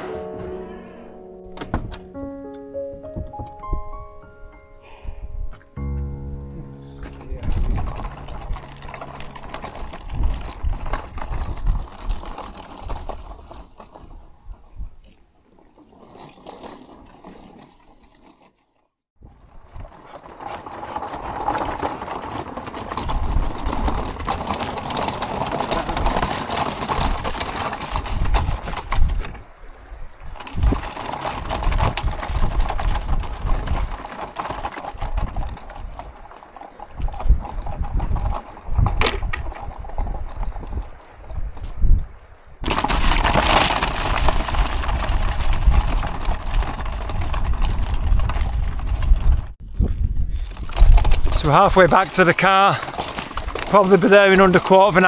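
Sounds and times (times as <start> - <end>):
cart rattling over rough track: 0.0 - 0.6, 5.8 - 14.3, 19.4 - 29.5, 30.4 - 41.4, 42.6 - 49.5, 50.4 - 55.0
footsteps: 0.0 - 11.4.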